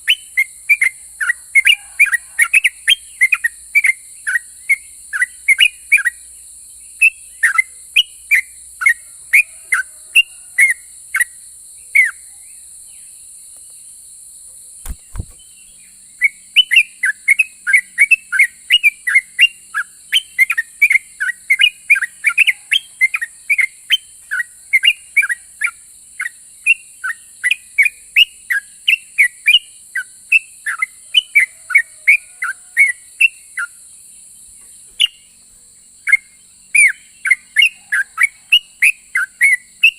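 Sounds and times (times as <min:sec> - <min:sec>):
bird singing whistled notes: 0:00.0 - 0:13.8, 0:14.8 - 0:33.8, 0:34.5 - 0:39.9
low thud: 0:14.8 - 0:15.4.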